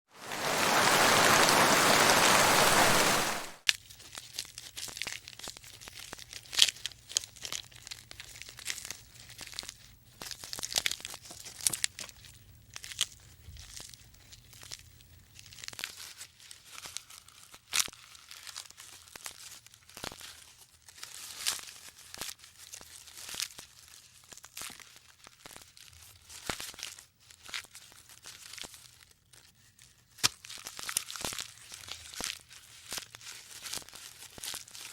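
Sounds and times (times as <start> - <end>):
loud steady hiss: 0.2 - 3.6
crackling and crunching: 0.2 - 34.9.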